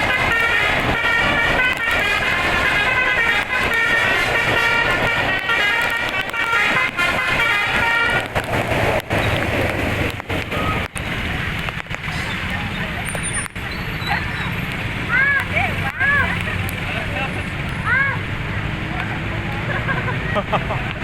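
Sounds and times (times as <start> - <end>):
multi-tone bus horn melody: 0.0 - 8.4
noisy wash: 0.0 - 21.0.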